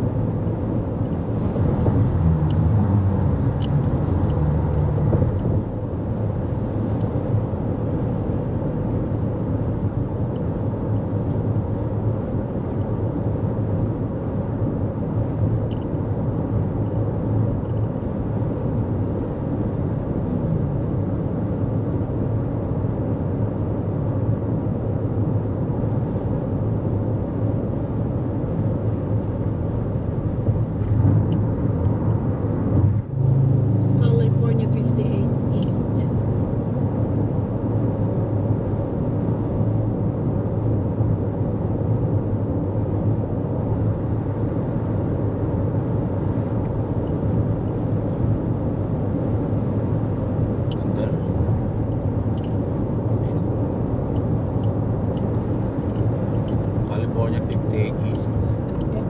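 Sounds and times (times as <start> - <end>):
engine drone: 28.0 - 59.0.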